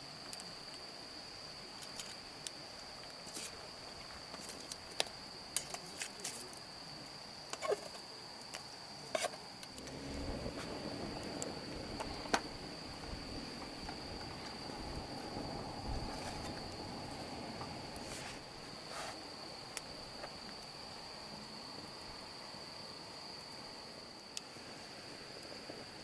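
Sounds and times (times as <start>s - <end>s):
low rumbling noise: 9.7s - 18.7s.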